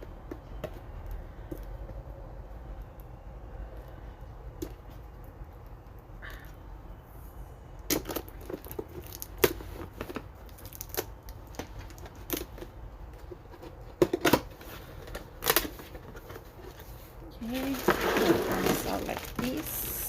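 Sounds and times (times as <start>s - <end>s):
cardboard box tearing and rustling: 17.4s - 20.0s.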